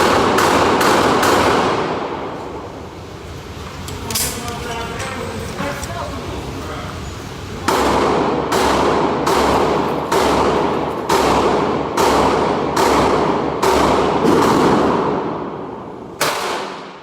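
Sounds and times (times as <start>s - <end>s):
gunshots with long echo: 0.0s - 2.3s, 7.7s - 17.0s.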